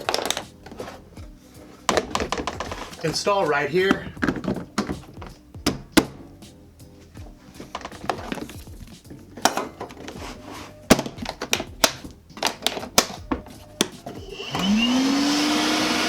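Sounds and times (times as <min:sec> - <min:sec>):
plastic clicks and knocks: 0:00.0 - 0:00.8, 0:01.9 - 0:02.8, 0:03.9 - 0:06.2, 0:07.7 - 0:08.5, 0:10.9 - 0:14.0
vacuum motor whining: 0:14.1 - 0:16.0.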